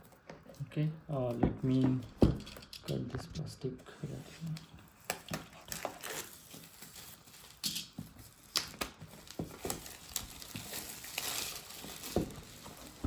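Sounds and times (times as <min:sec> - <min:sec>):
plastic wrapping crinkling: 0:04.4 - 0:13.0.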